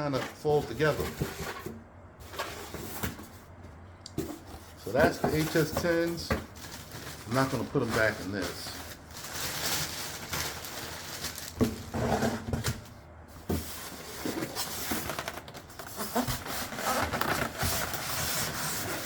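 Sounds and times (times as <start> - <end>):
packaging rustling: 4.7 - 12.9, 13.6 - 19.0.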